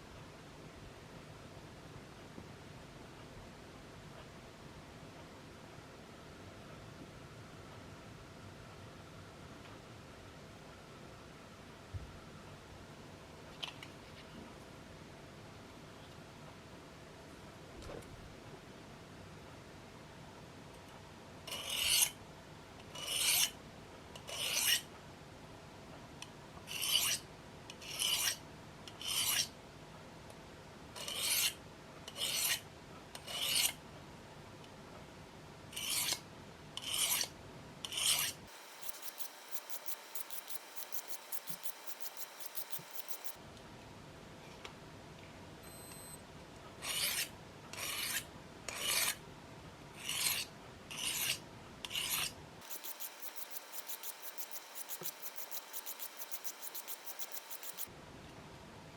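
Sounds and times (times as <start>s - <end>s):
knife scraping sharpening plate: 37.9s - 43.4s, 51.0s - 57.9s
faint rapid ticking: 38.5s - 43.4s, 52.6s - 57.9s.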